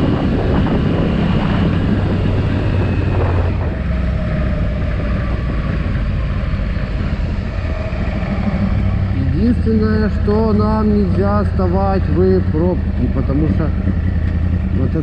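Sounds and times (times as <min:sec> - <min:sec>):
wind noise on microphone: 0:00.0 - 0:11.4
motorcycle engine running: 0:00.0 - 0:15.0.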